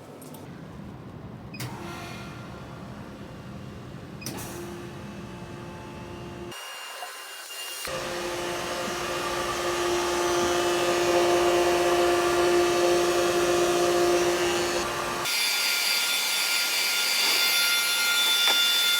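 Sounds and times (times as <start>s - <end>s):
vacuum pump high whine: 7.9s - 15.3s
vacuum pump humming: 7.9s - 15.3s.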